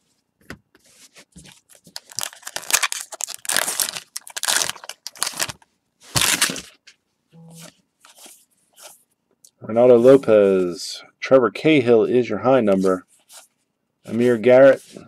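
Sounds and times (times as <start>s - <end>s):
card packs crinkling and rustling: 1.4s - 6.9s.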